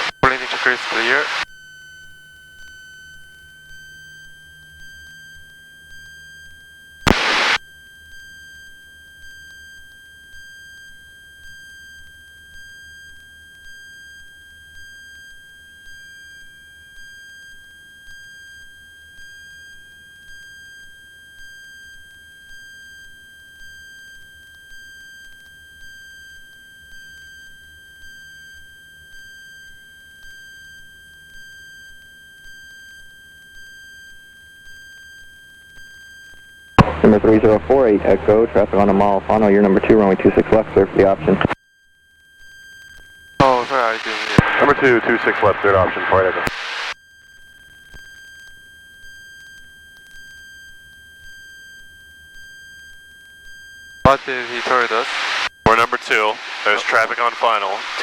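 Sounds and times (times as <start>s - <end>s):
short burst of noise: 7.1s - 7.6s.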